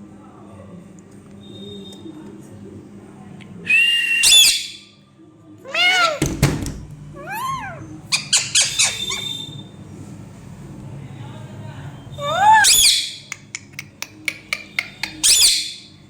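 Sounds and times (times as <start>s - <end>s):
parrot whistling and calling: 3.7s - 4.8s, 5.7s - 6.2s, 7.2s - 9.6s, 12.2s - 13.2s, 15.2s - 15.8s.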